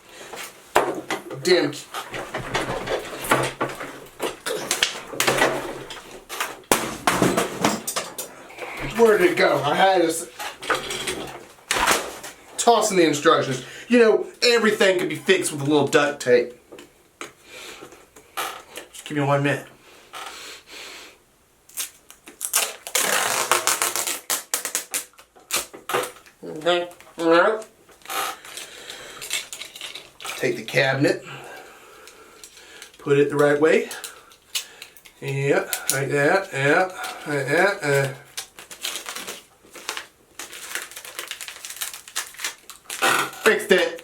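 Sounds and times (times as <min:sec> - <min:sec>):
craft pieces and papers rustling: 0:00.2 - 0:13.6, 0:21.8 - 0:30.8, 0:32.4 - 0:44.0
duct tape ripping: 0:02.0 - 0:07.0, 0:21.7 - 0:26.3, 0:33.9 - 0:44.0
small parts clicking and knocking: 0:27.9 - 0:30.5.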